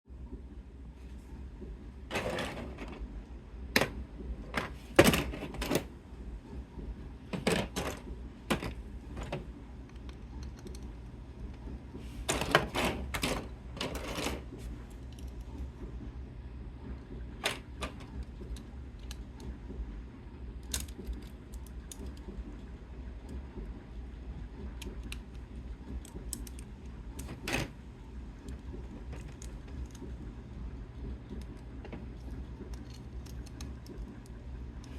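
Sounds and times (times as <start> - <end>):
plastic parts clicking: 20.6 - 22.3, 24.8 - 27.7, 31.2 - 34.2.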